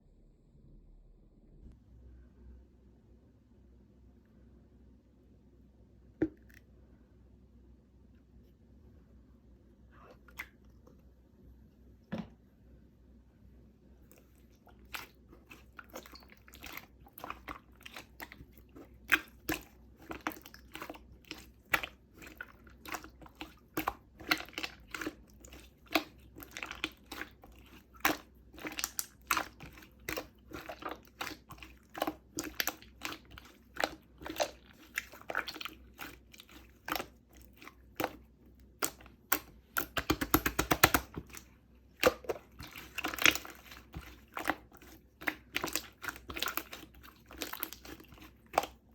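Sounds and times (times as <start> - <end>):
slime squished by hand: 14.0 - 48.9
wet clicks and pops: 38.8 - 41.4.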